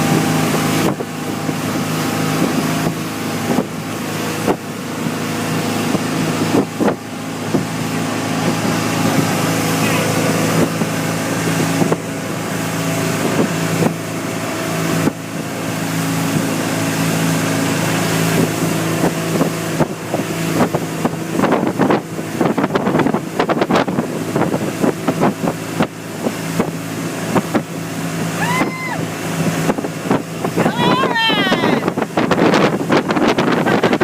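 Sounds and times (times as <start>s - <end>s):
speedboat engine running: 0.0s - 34.0s
wind buffeting microphone: 0.0s - 34.0s.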